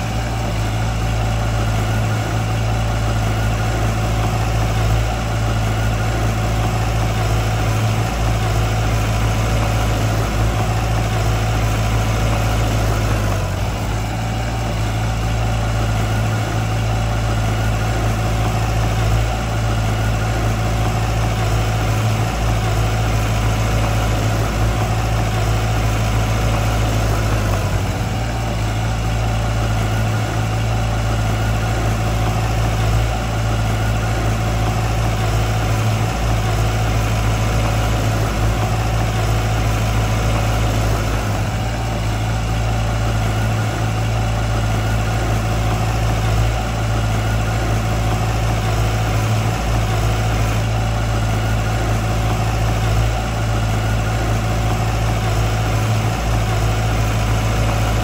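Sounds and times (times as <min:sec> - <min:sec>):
heavy machinery diesel engine: 0:00.0 - 0:58.0.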